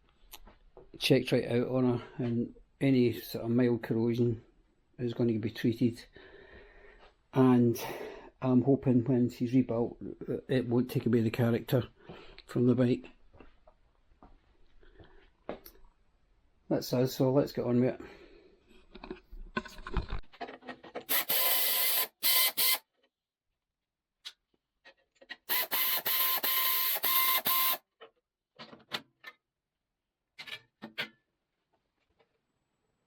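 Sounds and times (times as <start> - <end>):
power tool motor whine: 21.1 - 22.8, 25.5 - 27.8.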